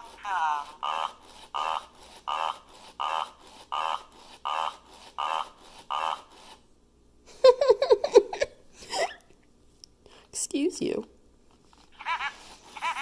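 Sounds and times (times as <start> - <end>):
toy electronic voice: 0.0 - 6.4, 12.0 - 13.0.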